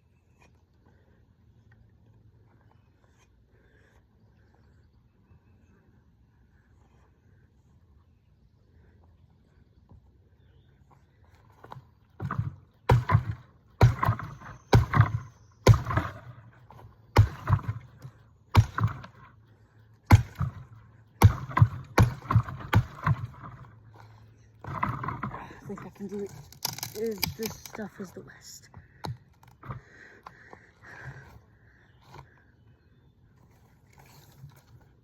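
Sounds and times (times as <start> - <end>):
axe chopping wood: 12.2 - 16.5, 17.1 - 19.2, 20.1 - 23.6.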